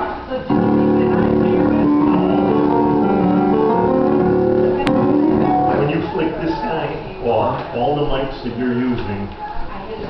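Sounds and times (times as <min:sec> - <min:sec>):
keyboard playing sustained chords: 0:00.5 - 0:06.5.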